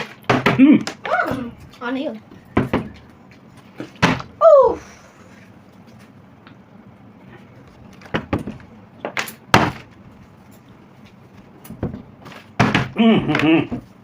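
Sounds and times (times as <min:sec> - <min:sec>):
plastic bottle knocking and thudding: 0:11.8 - 0:13.9.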